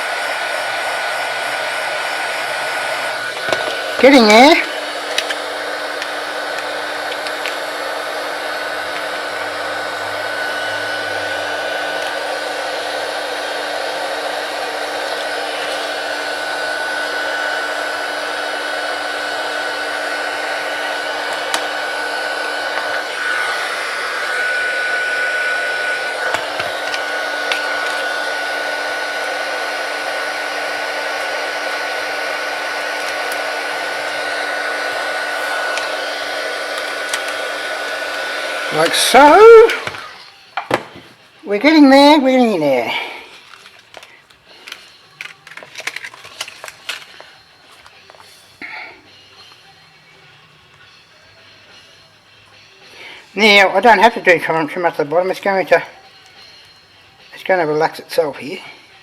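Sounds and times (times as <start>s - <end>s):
hot-air blower whine: 0.0s - 49.6s.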